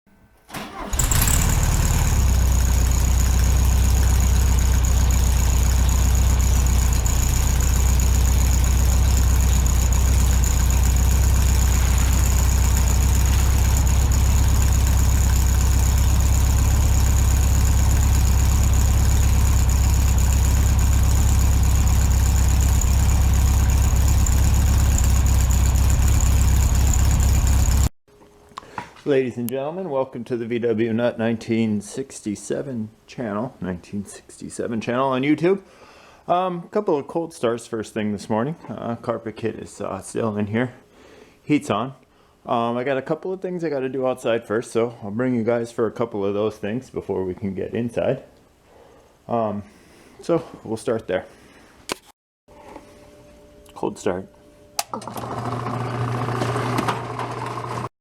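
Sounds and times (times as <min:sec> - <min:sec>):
engine idling: 0:00.6 - 0:27.9.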